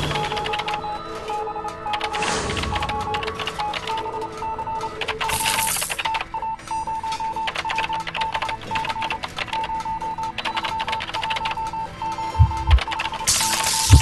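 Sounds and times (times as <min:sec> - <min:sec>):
short electronic beeps: 0:11.6 - 0:14.0
rapid machine clicking: 0:12.4 - 0:14.0.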